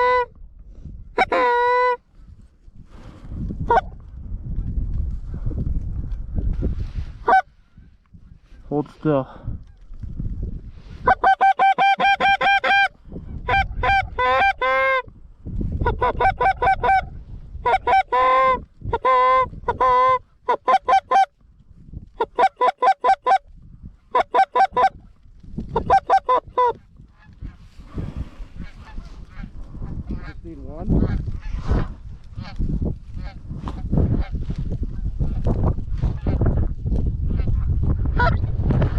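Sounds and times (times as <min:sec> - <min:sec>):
goose call honks and clucks: 0:00.0 - 0:00.4, 0:01.2 - 0:02.0, 0:03.7 - 0:04.0, 0:07.2 - 0:07.5, 0:11.0 - 0:15.1, 0:15.8 - 0:21.3, 0:22.2 - 0:23.5, 0:24.1 - 0:25.1, 0:25.7 - 0:27.8, 0:28.5 - 0:30.4, 0:33.2 - 0:35.1, 0:36.0 - 0:36.6, 0:37.3 - 0:38.5.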